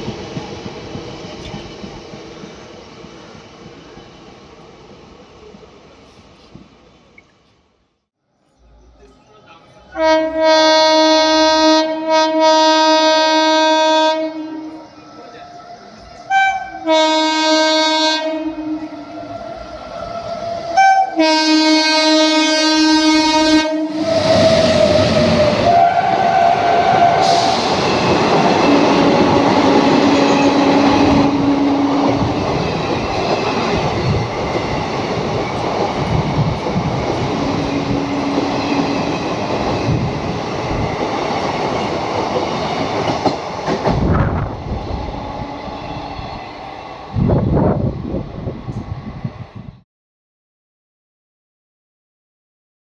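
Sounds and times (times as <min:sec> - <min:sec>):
locomotive horn blasts: 0:10.0 - 0:14.9, 0:16.3 - 0:19.1, 0:20.8 - 0:24.1, 0:28.6 - 0:32.4, 0:37.6 - 0:39.0
train wheels clattering on rails: 0:24.0 - 0:45.1.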